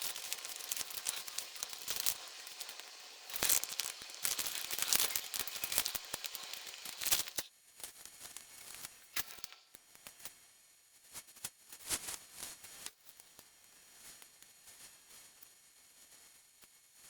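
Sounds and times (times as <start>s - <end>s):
plastic crinkling: 0.0s - 7.5s.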